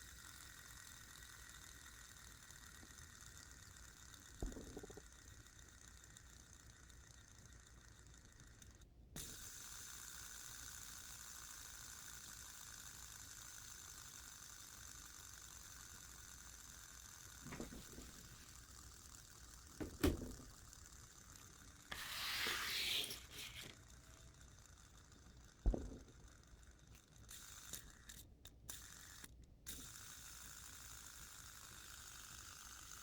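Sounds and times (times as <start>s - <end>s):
fidget spinner whirring: 0.0s - 33.0s
handling knocks: 19.8s - 20.4s.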